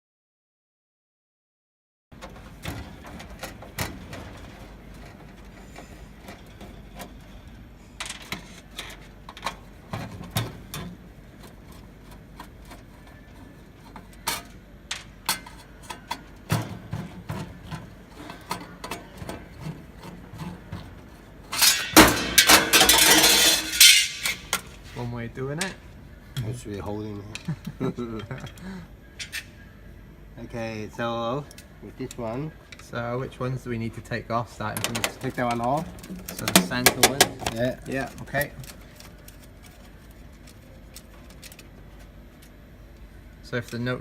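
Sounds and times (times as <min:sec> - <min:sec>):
tools tapping on machine panel: 0:34.8 - 0:37.6.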